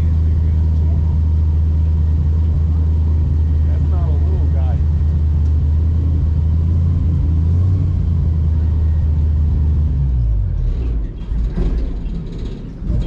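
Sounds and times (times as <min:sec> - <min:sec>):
airboat engine and propeller drone: 0:00.0 - 0:07.7.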